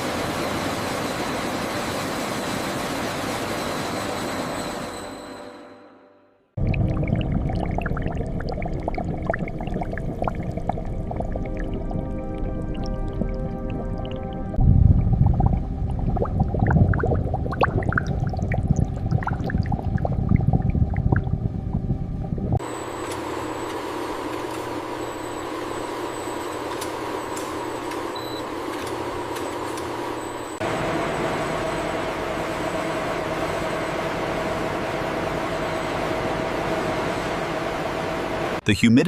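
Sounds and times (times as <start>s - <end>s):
industrial machinery running: 0.0s - 5.3s.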